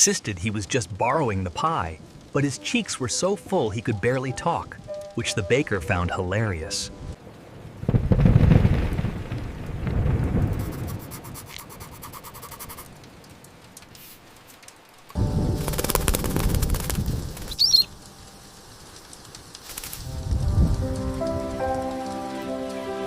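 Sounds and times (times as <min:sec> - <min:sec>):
rain: 0:00.0 - 0:23.0
thunder rumbling: 0:07.5 - 0:11.3, 0:15.1 - 0:22.3
rush of storm noise: 0:07.5 - 0:13.1, 0:15.1 - 0:22.0.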